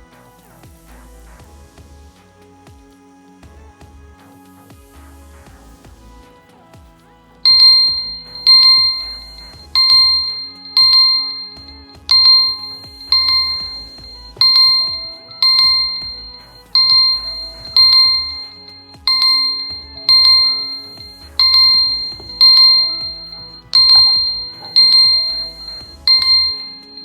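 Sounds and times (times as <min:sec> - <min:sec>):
soft low musical backing: 0:00.0 - 0:27.0
bell-like ringtone chime: 0:07.5 - 0:27.0.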